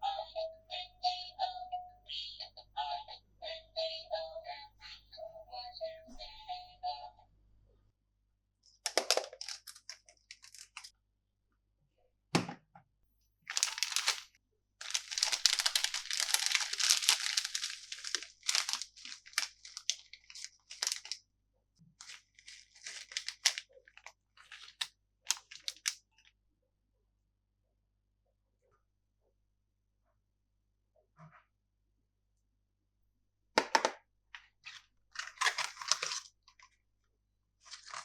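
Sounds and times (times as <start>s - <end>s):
packaging torn and crinkled: 8.9s - 10.9s, 13.5s - 21.2s, 22.0s - 26.0s, 35.1s - 36.4s, 37.6s - 38.0s.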